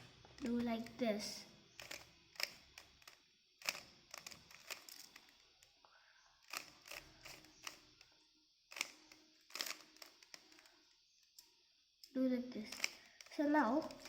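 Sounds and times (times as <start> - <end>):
plastic puzzle cube clicking: 1.8 - 5.4, 6.5 - 8.0, 8.7 - 10.7, 12.7 - 14.0.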